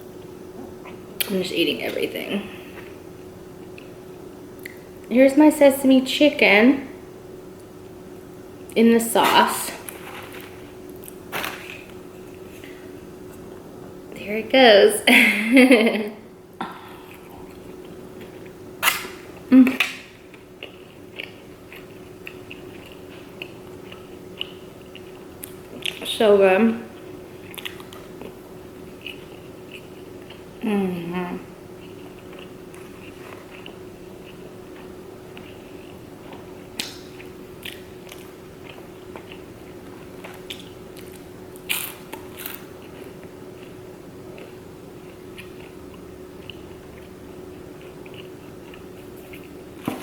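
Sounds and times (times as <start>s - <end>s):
faint steady hum: 0.0s - 50.0s
person chewing food: 16.6s - 19.5s, 20.2s - 26.1s, 26.9s - 30.6s, 31.6s - 50.0s.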